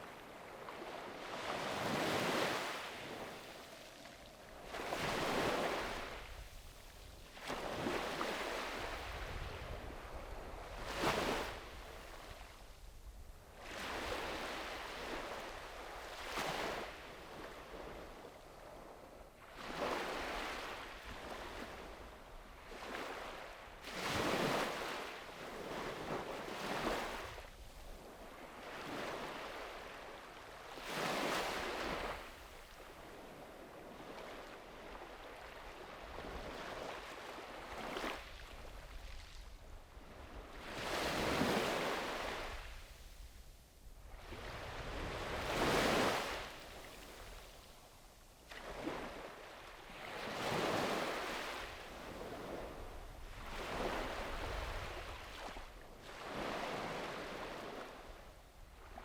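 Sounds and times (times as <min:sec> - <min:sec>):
sea waves breaking on beach: 0:00.2 - 0:06.5, 0:28.3 - 0:39.4, 0:40.2 - 0:42.8, 0:44.2 - 0:47.5, 0:48.5 - 0:58.2.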